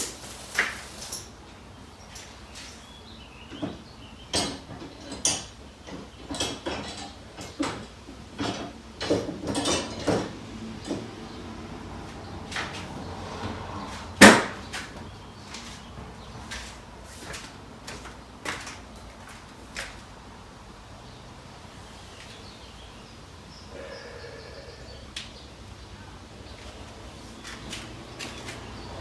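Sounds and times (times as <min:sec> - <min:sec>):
knocks and clatter of objects: 0:03.5 - 0:11.2.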